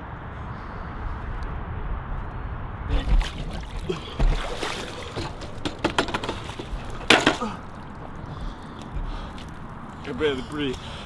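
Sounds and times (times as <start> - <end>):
water splashing: 2.9 - 11.0
bike knocking and clattering: 4.2 - 11.0.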